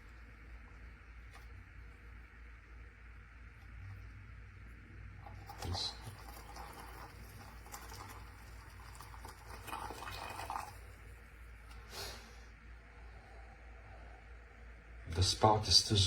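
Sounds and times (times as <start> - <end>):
coffee pouring into cup: 5.1 - 11.8.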